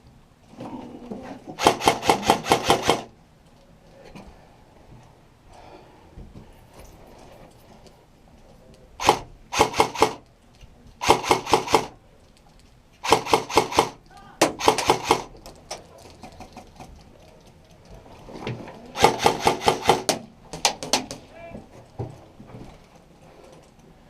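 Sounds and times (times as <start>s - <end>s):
airsoft gun firing bursts: 1.6s - 3.1s, 9.0s - 10.2s, 11.0s - 12.0s, 13.0s - 15.3s, 19.0s - 20.2s.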